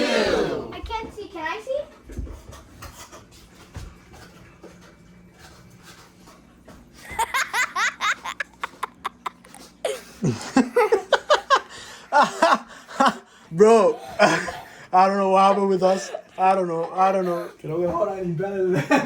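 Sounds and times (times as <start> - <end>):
hearty laughter: 7.0 - 13.3, 18.7 - 19.0.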